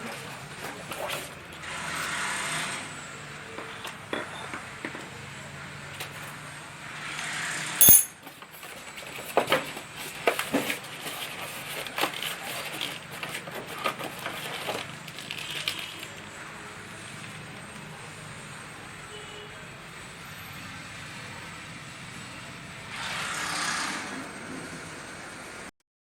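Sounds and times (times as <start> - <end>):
metal parts clinking: 7.8 - 8.2.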